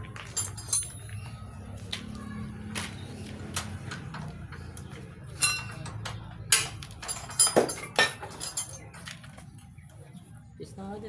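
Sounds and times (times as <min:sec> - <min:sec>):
metallic clinks of tools: 0:00.3 - 0:01.3, 0:05.4 - 0:09.2.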